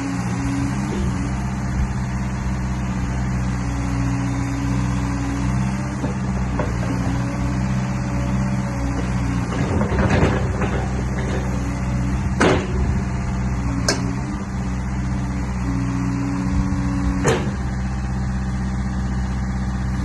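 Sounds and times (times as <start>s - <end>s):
excavator diesel engine running: 0.0s - 20.0s
sharp knocks: 12.4s - 12.8s.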